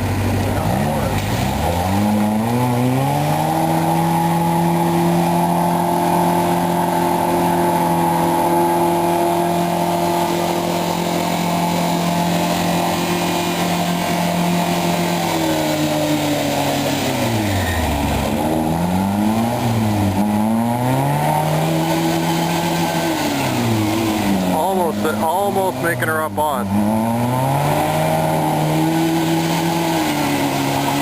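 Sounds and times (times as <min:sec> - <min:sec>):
off-road vehicle engine revving: 0:00.0 - 0:31.0.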